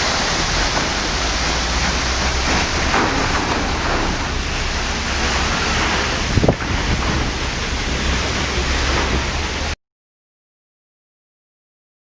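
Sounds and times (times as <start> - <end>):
bump: 0.0 - 9.8
waterfall rushing: 0.0 - 9.8.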